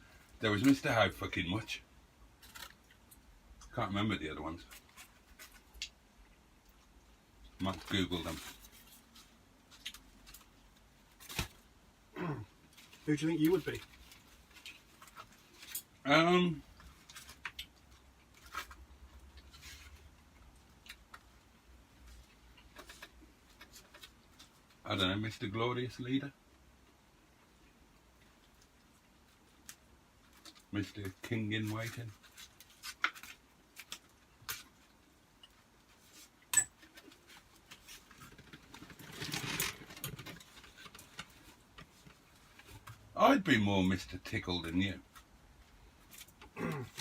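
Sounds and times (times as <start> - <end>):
soft rustle: 7.6 - 11.7, 12.6 - 16.0, 16.6 - 24.8.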